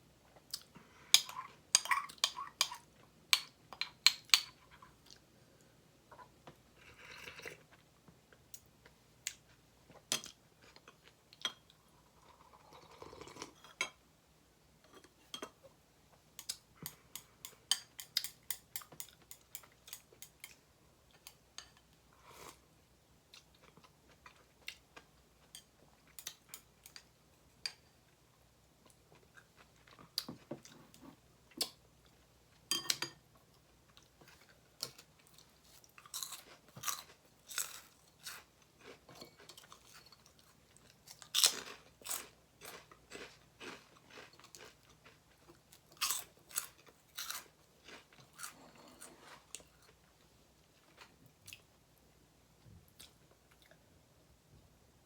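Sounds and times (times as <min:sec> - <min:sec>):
cutlery clinking on dishes: 0:32.7 - 0:33.2
crunchy chewing: 0:35.2 - 0:50.0.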